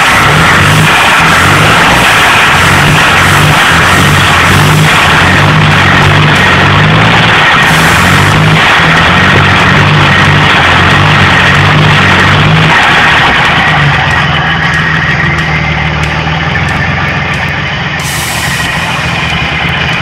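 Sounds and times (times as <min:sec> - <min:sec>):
car engine running: 0:00.0 - 0:20.0.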